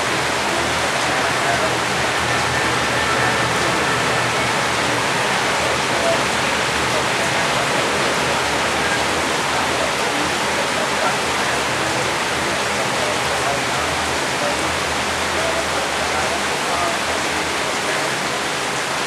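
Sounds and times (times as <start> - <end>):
steady rain: 0.0 - 19.0.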